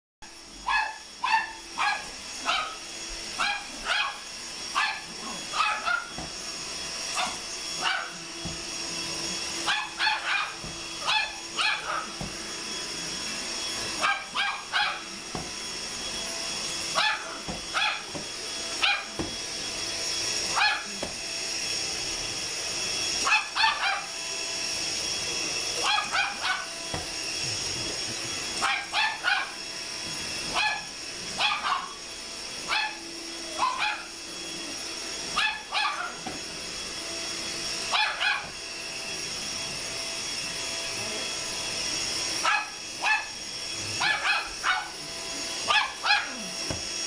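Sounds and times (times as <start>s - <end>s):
vacuum cleaner whine: 0.2s - 47.0s
small dog barking: 0.6s - 6.2s, 7.1s - 8.2s, 9.6s - 12.3s, 14.0s - 15.1s, 16.9s - 19.2s, 20.5s - 21.1s, 23.2s - 24.1s, 25.8s - 26.8s, 28.6s - 29.6s, 30.5s - 32.0s, 32.6s - 33.0s, 33.6s - 34.2s, 35.3s - 36.2s, 37.9s - 38.6s, 42.4s - 43.4s, 44.0s - 45.0s, 45.6s - 46.5s.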